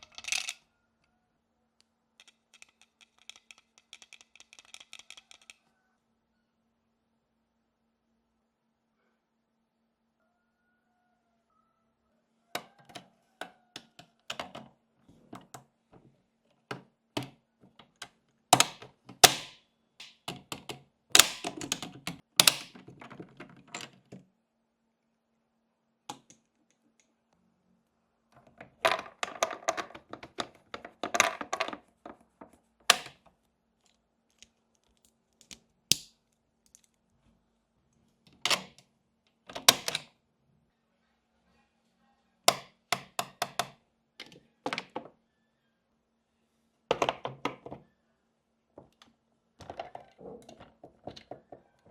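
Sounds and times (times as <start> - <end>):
toy pieces clicking and clacking: 0.0 - 0.6, 2.2 - 5.6, 28.8 - 31.8.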